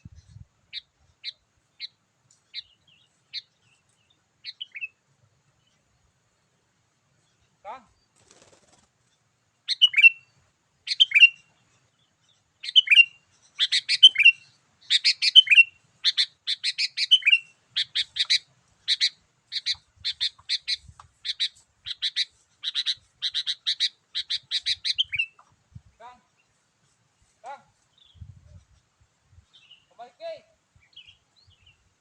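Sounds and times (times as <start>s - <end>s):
bulbul singing: 9.7s - 10.3s, 10.9s - 11.5s, 12.6s - 25.5s.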